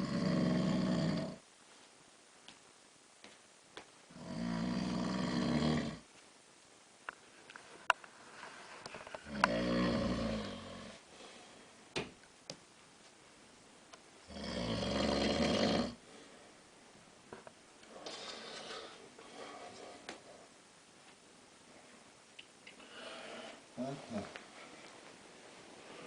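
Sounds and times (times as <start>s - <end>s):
man snoring: 0.0s - 1.4s, 4.1s - 6.0s, 9.2s - 11.0s, 14.3s - 16.0s
quiet breathing: 7.5s - 12.0s, 15.9s - 17.0s, 17.8s - 20.7s, 21.6s - 26.0s.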